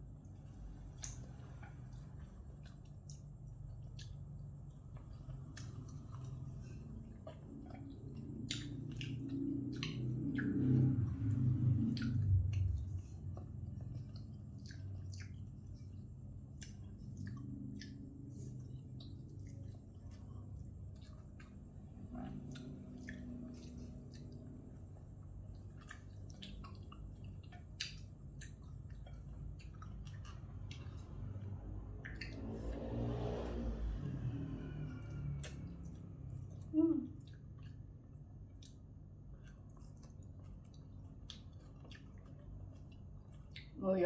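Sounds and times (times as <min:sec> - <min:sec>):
person chewing food: 0:00.0 - 0:43.8
low steady hum: 0:00.0 - 0:44.0
wet mouth clicks and smacks: 0:01.0 - 0:02.0, 0:08.4 - 0:10.8, 0:14.1 - 0:15.4, 0:25.8 - 0:28.7, 0:32.0 - 0:32.8, 0:35.4 - 0:37.7.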